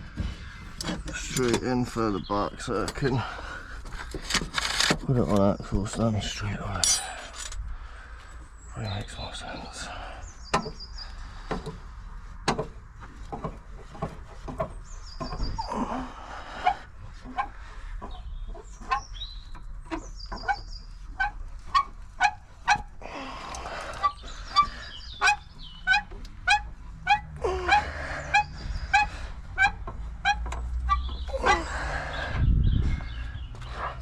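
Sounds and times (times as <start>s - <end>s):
birds chirping: 0.0s - 34.0s
jack handle squeaking: 0.6s - 3.3s, 5.9s - 7.6s, 18.1s - 32.2s.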